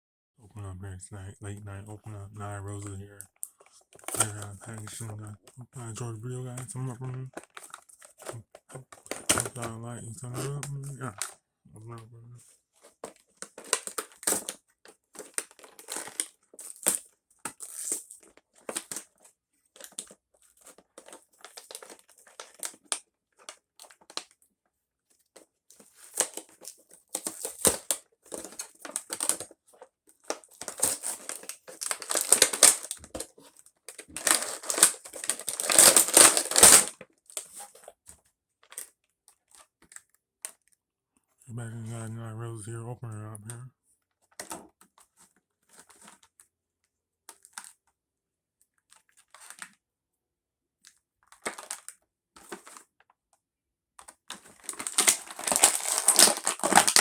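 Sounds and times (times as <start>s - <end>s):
packaging crinkling and tearing: 19.8s - 22.9s, 30.3s - 33.3s, 33.9s - 37.8s, 54.4s - 57.0s.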